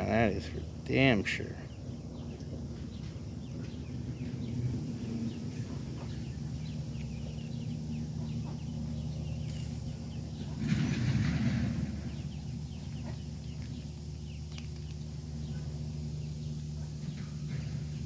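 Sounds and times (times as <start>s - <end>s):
ducklings peeping: 0.0s - 18.0s
steady low hum: 0.0s - 18.0s.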